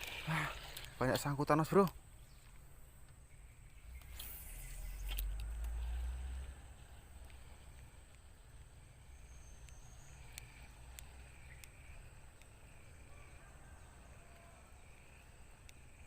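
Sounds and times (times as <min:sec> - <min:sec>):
faint ticks: 0:00.0 - 0:16.0
thin high-pitched hum: 0:03.3 - 0:06.1.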